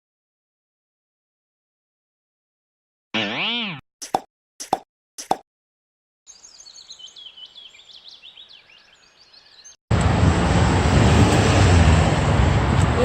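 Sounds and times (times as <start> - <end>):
small birds chirping: 6.3 - 9.8
loud outdoor rumble: 9.9 - 13.0.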